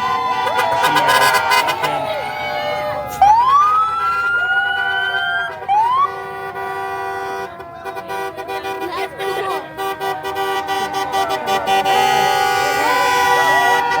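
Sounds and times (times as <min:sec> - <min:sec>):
siren rising in pitch: 0:00.0 - 0:06.2
steady horn-like tones: 0:00.0 - 0:14.0.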